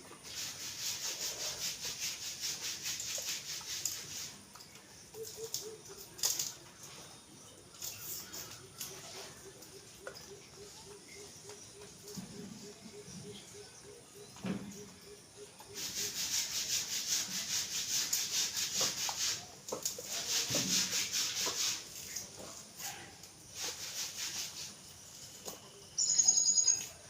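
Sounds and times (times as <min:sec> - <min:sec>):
fast rubbing strokes: 0:00.2 - 0:04.5, 0:15.7 - 0:22.2, 0:23.4 - 0:25.0.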